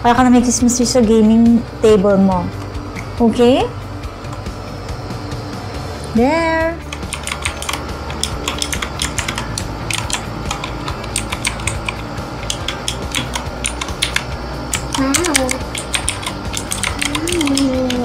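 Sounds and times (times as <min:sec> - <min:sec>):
typing on clicky mechanical keyboard: 0:06.9 - 0:18.0.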